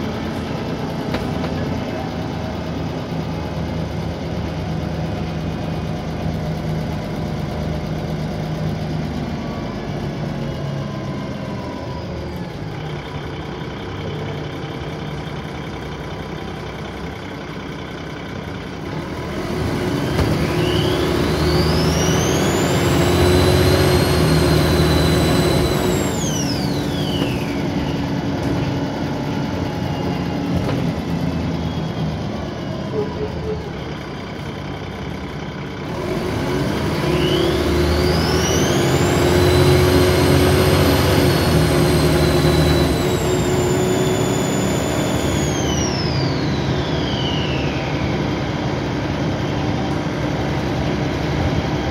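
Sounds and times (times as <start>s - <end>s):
bus diesel engine running: 0.0s - 51.9s
turbo whine: 19.5s - 34.6s, 35.9s - 50.7s.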